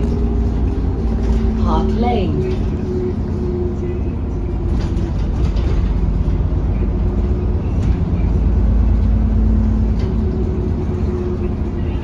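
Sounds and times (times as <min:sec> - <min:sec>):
bus engine rumbling: 0:00.0 - 0:12.0.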